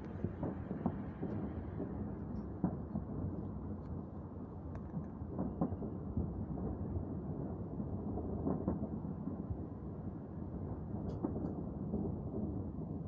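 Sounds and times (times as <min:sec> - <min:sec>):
distant fireworks booming: 0:00.1 - 0:03.4.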